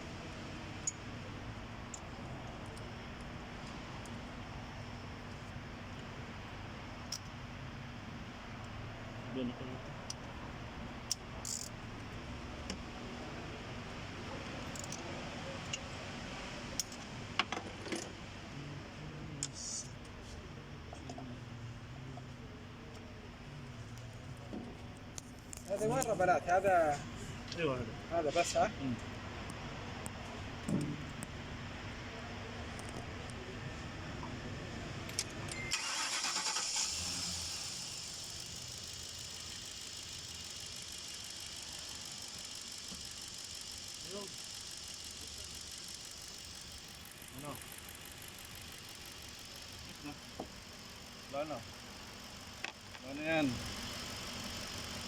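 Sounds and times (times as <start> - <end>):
engine cranking: 35.7 - 50.6
engine running with fine ticking: 35.7 - 55.0.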